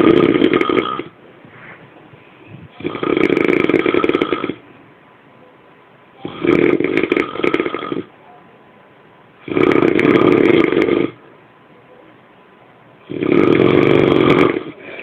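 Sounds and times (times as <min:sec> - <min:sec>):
loud rattling snores: 0:00.0 - 0:01.1, 0:02.8 - 0:04.6, 0:06.2 - 0:08.1, 0:09.4 - 0:11.2, 0:13.0 - 0:15.0.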